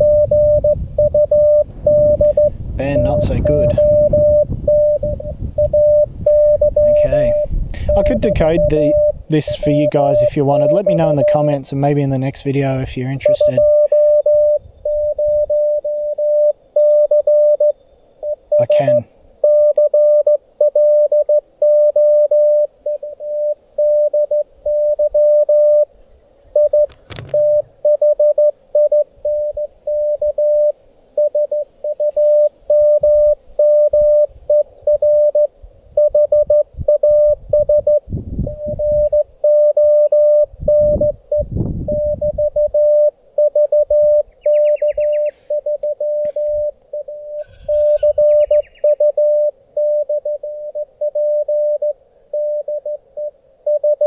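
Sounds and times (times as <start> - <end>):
morse code tone: 0.0 - 11.6, 12.6 - 25.9, 26.6 - 54.0.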